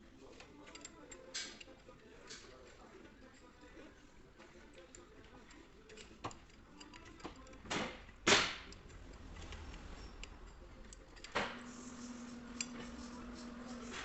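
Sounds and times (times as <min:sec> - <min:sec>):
hand tools clicking and knocking: 0:04.7 - 0:11.6.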